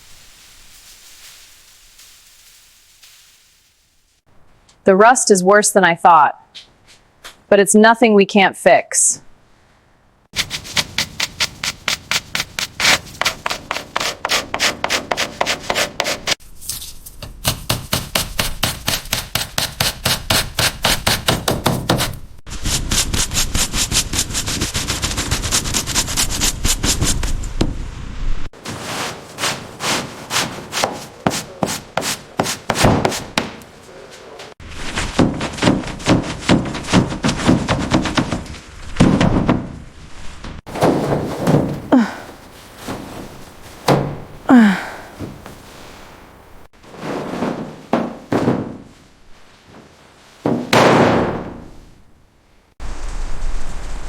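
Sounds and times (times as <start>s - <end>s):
rapid scrubbing or sanding strokes: 10.4s - 16.4s, 22.5s - 27.2s, 28.7s - 33.3s.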